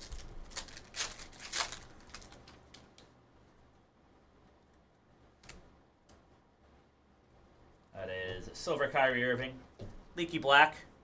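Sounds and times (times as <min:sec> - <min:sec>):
cards and foil wrappers rustling: 0:00.0 - 0:03.0.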